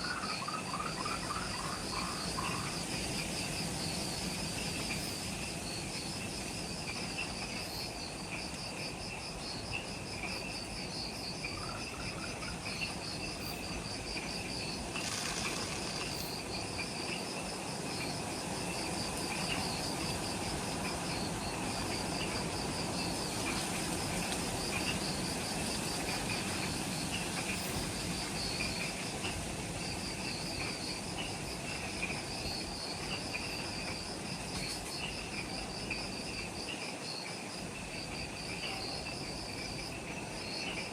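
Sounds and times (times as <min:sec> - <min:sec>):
high rapid pulsing insect trill: 0:00.0 - 0:40.9
hiss of many insects: 0:00.0 - 0:40.9
lower insect chirping: 0:00.0 - 0:40.9.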